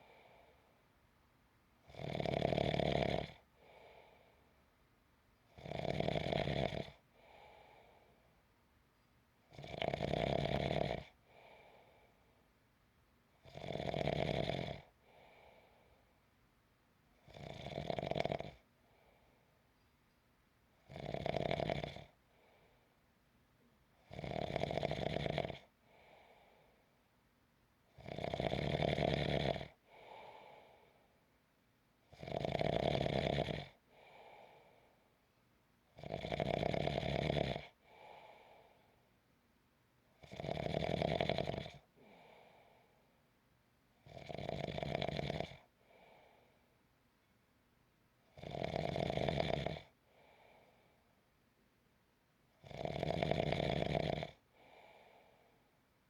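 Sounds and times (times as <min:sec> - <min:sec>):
faint breath: 0:00.0 - 0:01.0, 0:03.5 - 0:04.7, 0:07.0 - 0:09.2, 0:11.1 - 0:12.6, 0:14.9 - 0:16.3, 0:18.7 - 0:20.1, 0:22.1 - 0:23.1, 0:25.8 - 0:27.1, 0:29.8 - 0:31.3, 0:33.8 - 0:35.3, 0:37.7 - 0:39.2, 0:41.9 - 0:43.3, 0:45.6 - 0:46.8, 0:50.0 - 0:51.3, 0:54.4 - 0:55.8
person snoring: 0:40.3 - 0:42.2, 0:52.7 - 0:54.4.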